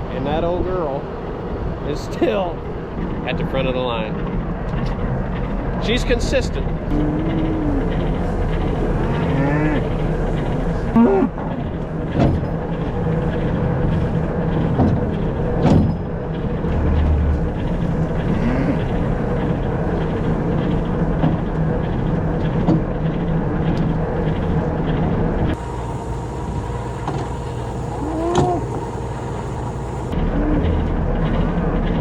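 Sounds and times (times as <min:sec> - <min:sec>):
vehicle engine running: 0:03.2 - 0:32.0
cattle calls: 0:06.9 - 0:11.8, 0:18.2 - 0:19.0, 0:27.2 - 0:30.9.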